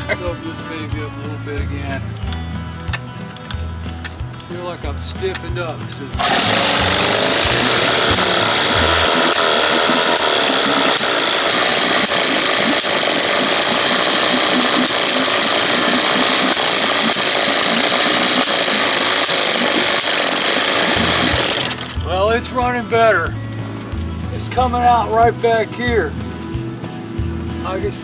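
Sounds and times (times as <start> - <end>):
small engine running: 6.0 - 22.3.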